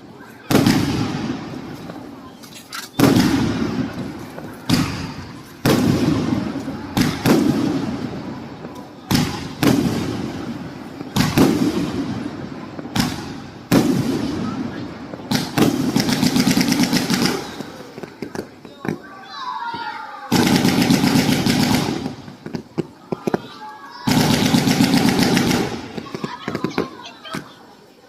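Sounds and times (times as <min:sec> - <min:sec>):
firework crackle: 0:00.0 - 0:27.7
firework cake firing: 0:00.2 - 0:19.2, 0:19.8 - 0:27.7.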